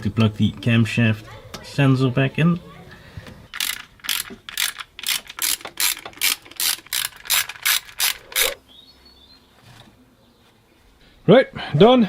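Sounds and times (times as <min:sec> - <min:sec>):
ratchet wrench clicking: 0:03.5 - 0:08.6.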